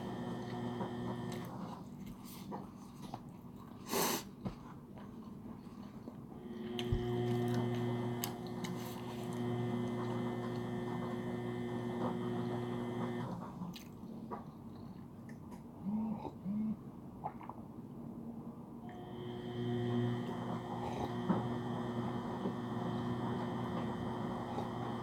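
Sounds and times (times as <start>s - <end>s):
machine hum with high whine: 0.0s - 1.6s, 6.4s - 13.4s, 18.8s - 25.0s
mouth and eating noises: 1.5s - 9.4s, 13.5s - 17.8s.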